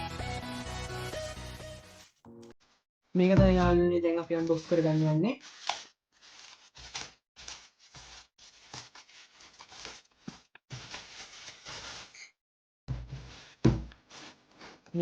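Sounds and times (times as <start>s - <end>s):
packaging rustling and crinkling: 5.4s - 12.1s.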